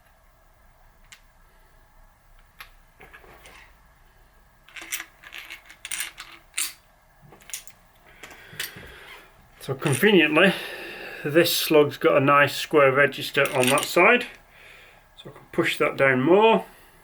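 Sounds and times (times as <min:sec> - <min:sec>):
steel parts clinking: 0:04.7 - 0:06.8, 0:07.4 - 0:07.8, 0:09.8 - 0:10.2, 0:13.4 - 0:14.0.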